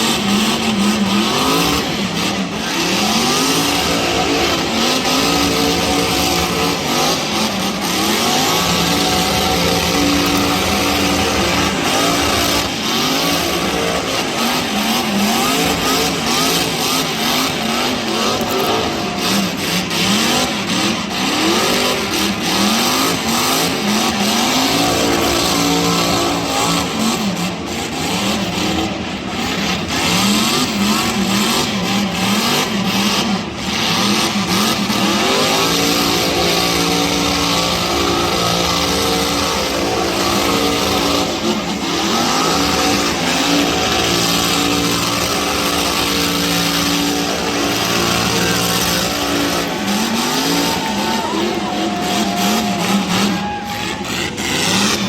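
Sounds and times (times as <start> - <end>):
car engine revving: 0.0 - 55.0.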